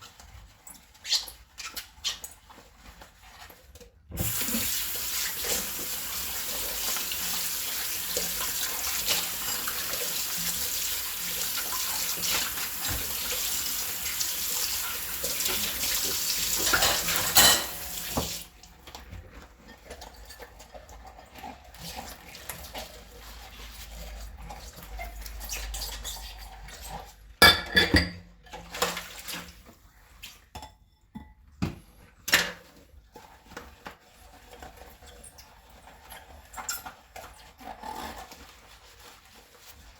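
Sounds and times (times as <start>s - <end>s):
sponge scrubbing: 0.0s - 18.5s, 19.3s - 27.1s, 33.1s - 39.9s
tap running: 15.1s - 18.4s
dishes clattering together: 16.5s - 18.4s, 27.4s - 28.3s
crockery clinking: 16.6s - 18.0s, 27.4s - 28.2s.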